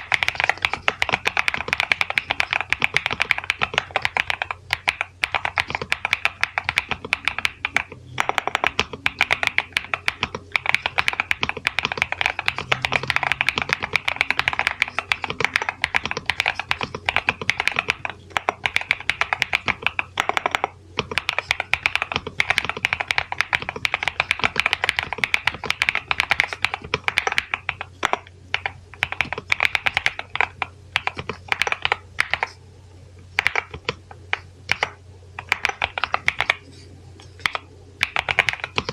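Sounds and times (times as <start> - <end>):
mechanical keyboard typing: 0.0 - 32.6, 33.4 - 36.6, 37.3 - 38.9.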